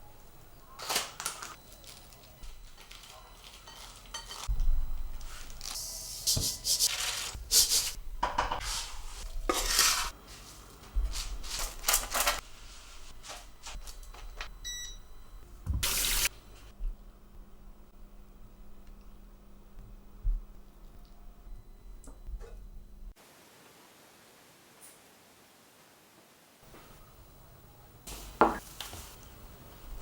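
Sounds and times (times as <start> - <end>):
kitchen utensils rustling and clattering: 0.8 - 14.5.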